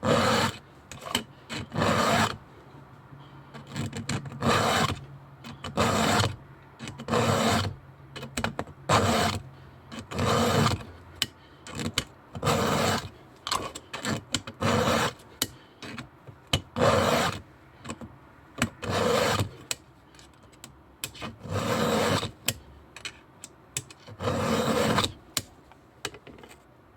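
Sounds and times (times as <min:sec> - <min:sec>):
file rasping on chainsaw chain: 0:00.0 - 0:02.4, 0:03.6 - 0:10.9, 0:11.7 - 0:16.0, 0:16.6 - 0:17.4, 0:18.6 - 0:19.8, 0:21.0 - 0:22.6, 0:24.1 - 0:25.2.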